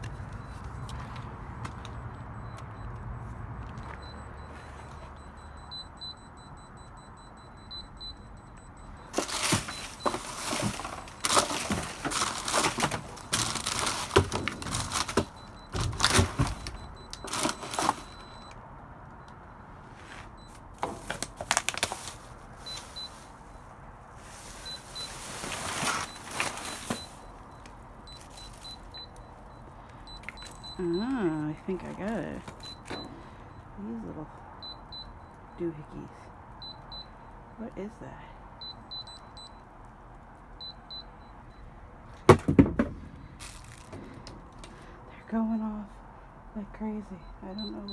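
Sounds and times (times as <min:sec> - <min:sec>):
trash rustling and clattering: 0:09.0 - 0:18.6, 0:19.8 - 0:33.5, 0:42.2 - 0:45.0.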